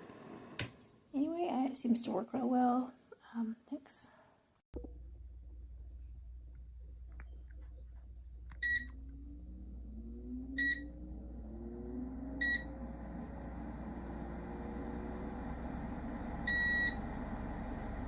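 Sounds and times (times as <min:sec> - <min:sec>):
fan motor hum: 0:04.9 - 0:18.0
heater fan airflow: 0:06.1 - 0:18.0
heater short high beeps: 0:08.6 - 0:08.9, 0:10.6 - 0:10.9, 0:12.4 - 0:12.7, 0:16.5 - 0:17.0.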